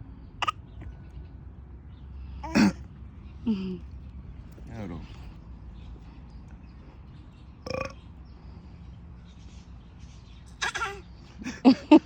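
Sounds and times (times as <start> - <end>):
short burp: 7.6 - 8.0.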